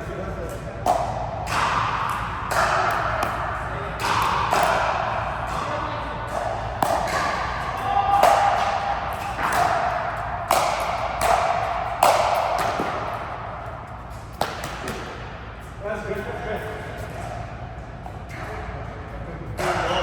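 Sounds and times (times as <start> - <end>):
ball strikes ringing in a court: 0.8 - 13.6.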